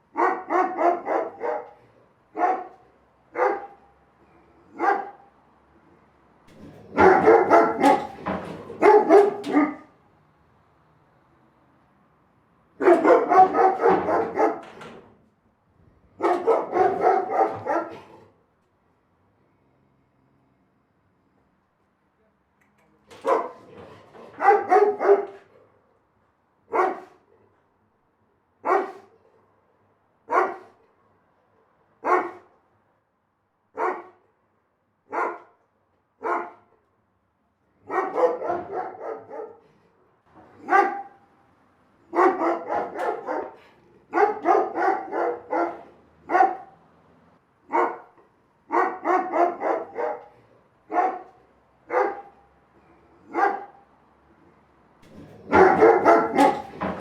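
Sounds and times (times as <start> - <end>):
big dog barking: 0.0 - 5.4, 6.5 - 10.0, 12.8 - 15.0, 16.1 - 18.4, 23.1 - 25.9, 26.7 - 27.6, 28.6 - 29.5, 30.2 - 30.9, 32.0 - 32.6, 33.7 - 34.3, 35.1 - 35.6, 36.2 - 36.8, 37.8 - 41.3, 42.0 - 46.9, 47.6 - 53.9, 55.0 - 57.0.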